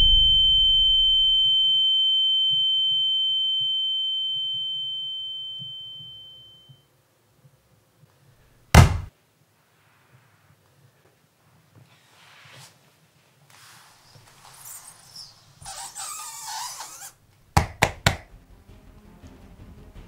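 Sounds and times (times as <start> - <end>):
loud thud: 0.0 - 1.4, 8.7 - 9.1
high electronic tone: 0.0 - 1.7.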